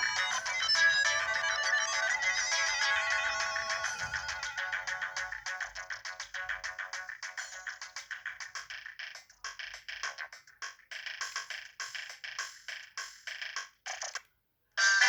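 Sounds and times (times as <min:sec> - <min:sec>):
polyphonic electronic ringtone: 0:00.0 - 0:08.0, 0:14.8 - 0:15.0.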